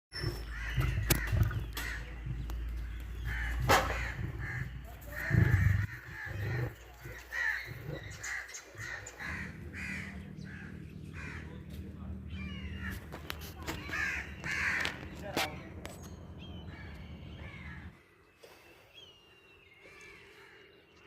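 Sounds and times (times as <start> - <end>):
crows cawing: 0.4 - 15.4, 16.6 - 18.0
deep low rumble: 0.5 - 17.9.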